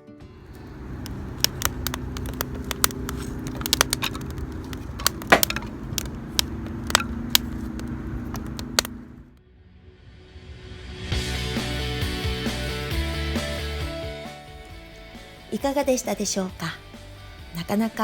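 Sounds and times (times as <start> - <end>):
campfire crackling and popping: 0.5 - 9.3.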